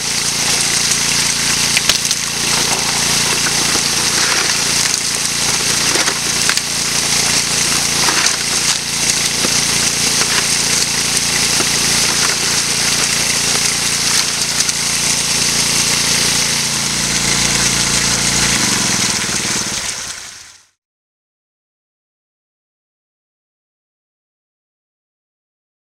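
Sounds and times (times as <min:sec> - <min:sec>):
small gas engine running: 0:00.0 - 0:20.8
water rushing through sluice: 0:00.0 - 0:20.8.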